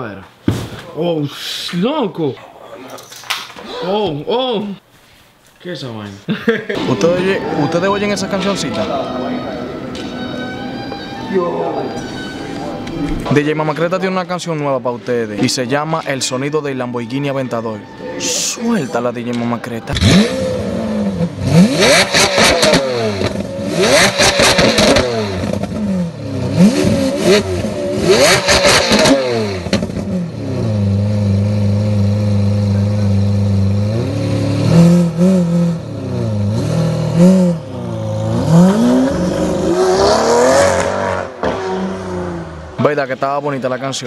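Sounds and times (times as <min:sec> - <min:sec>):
engine crackles: 0:19.9 - 0:42.1
car engine revving and idling: 0:19.9 - 0:42.8.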